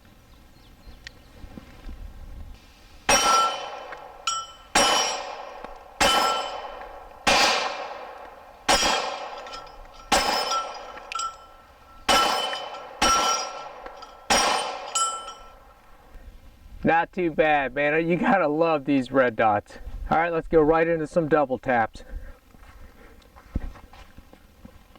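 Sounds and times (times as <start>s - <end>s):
steel plate target ringing: 3.0s - 15.9s
pistol shots: 3.1s - 15.8s.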